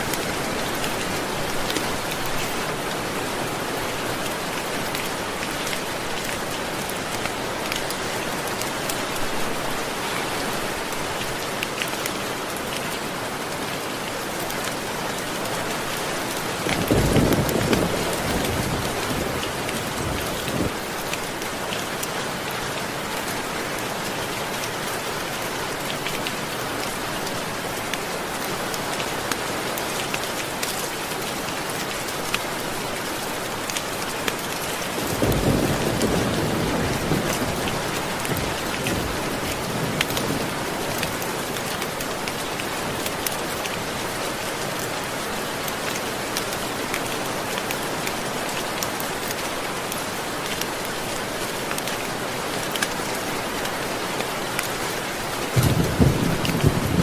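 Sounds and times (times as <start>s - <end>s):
steady rain falling: 0.0s - 57.0s
low rumble of thunder: 16.7s - 20.8s, 55.5s - 57.0s.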